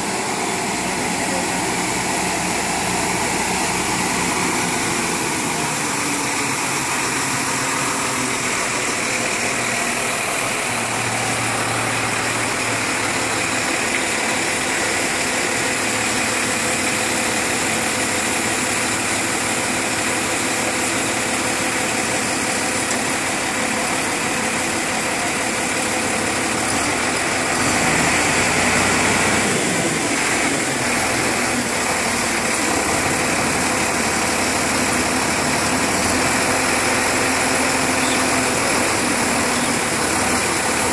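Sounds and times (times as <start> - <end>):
heavy vehicle engine idling: 0.0 - 40.9.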